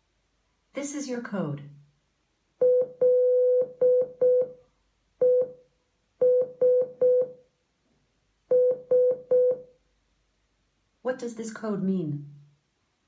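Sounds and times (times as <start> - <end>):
morse code beeps: 2.6 - 4.5, 5.2 - 5.6, 6.2 - 7.3, 8.5 - 9.6.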